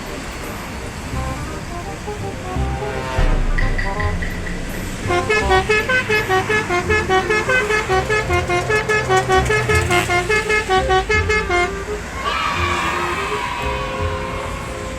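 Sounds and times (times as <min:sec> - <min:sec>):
bus horn melody: 0:00.0 - 0:13.5
thumping beat: 0:01.2 - 0:11.8.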